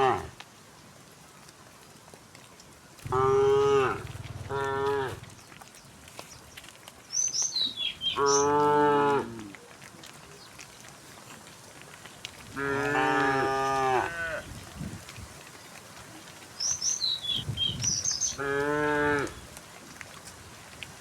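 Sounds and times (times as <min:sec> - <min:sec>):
cows mooing: 0:03.0 - 0:05.3, 0:08.1 - 0:09.4, 0:12.6 - 0:14.4, 0:18.3 - 0:19.4
bird chirping: 0:04.0 - 0:08.6.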